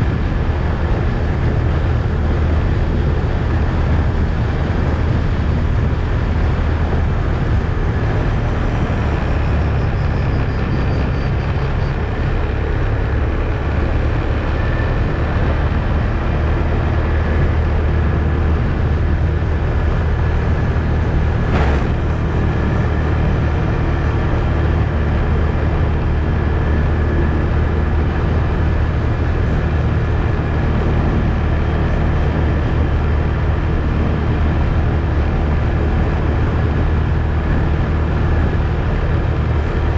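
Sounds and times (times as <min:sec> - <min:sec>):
atv engine running: 0:00.0 - 0:39.9
sharp knock: 0:21.5 - 0:22.2.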